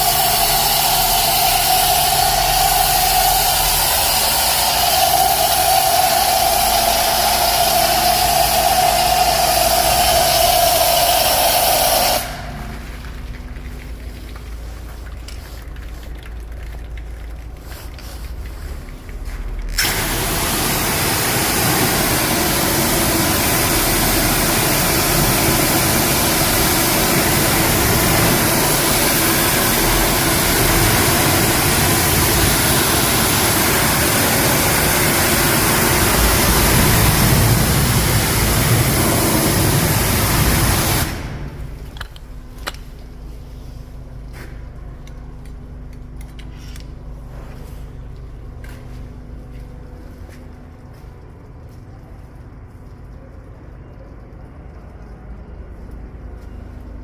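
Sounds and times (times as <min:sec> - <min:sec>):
foam lance spraying hiss: 0:00.0 - 0:12.4, 0:19.8 - 0:41.4
steady hum: 0:00.0 - 0:57.0.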